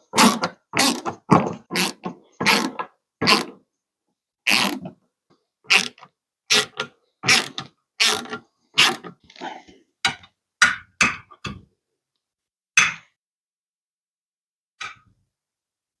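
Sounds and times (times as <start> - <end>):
tool knocks and clanks: 0.2 - 3.6.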